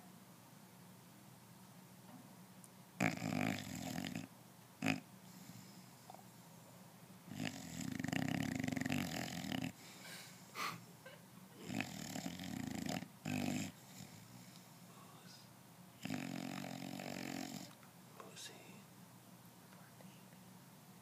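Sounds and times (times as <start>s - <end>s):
dog snoring: 3.0s - 6.3s, 7.3s - 9.8s, 11.6s - 14.6s, 16.0s - 17.8s.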